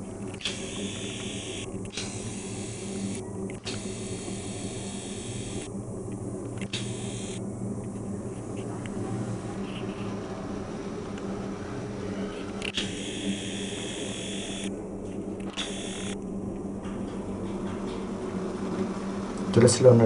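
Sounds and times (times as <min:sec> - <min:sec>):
pot heating on stove hissing: 0:00.0 - 0:05.7, 0:06.7 - 0:08.6
low hum: 0:00.0 - 0:19.6.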